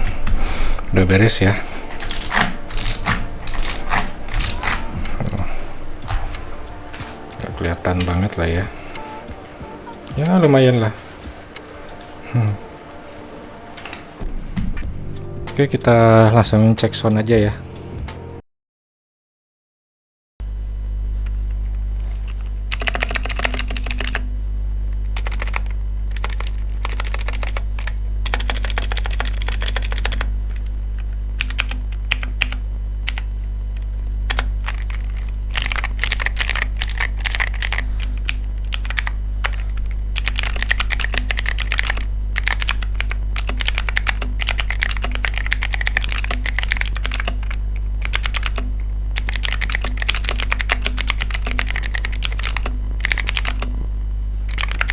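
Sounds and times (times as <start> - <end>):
steady low hum: 0.0 - 18.4, 20.4 - 54.9
mechanical keyboard typing: 1.9 - 5.3, 22.3 - 24.3, 25.2 - 30.6, 31.4 - 33.3, 34.3 - 53.8, 54.5 - 54.9.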